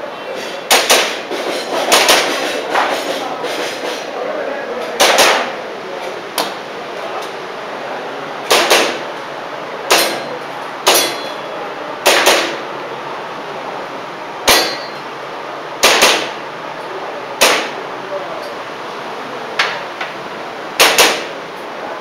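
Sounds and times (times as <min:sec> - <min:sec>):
steady background noise: 0:00.0 - 0:22.0
airsoft pistol shots: 0:00.7 - 0:01.2, 0:08.5 - 0:09.0, 0:09.9 - 0:10.2, 0:10.9 - 0:11.2, 0:12.0 - 0:12.6, 0:15.8 - 0:16.4, 0:17.4 - 0:17.8, 0:20.8 - 0:21.3.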